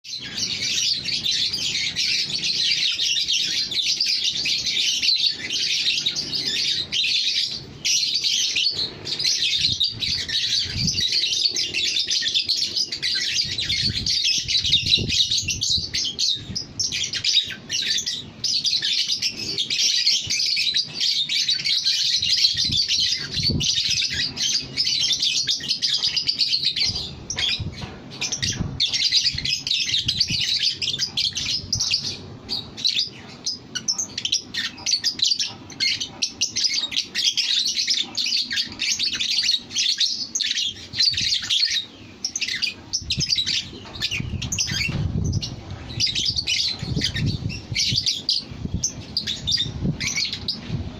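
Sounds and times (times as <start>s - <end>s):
lovebird chirping: 0.1s - 50.9s.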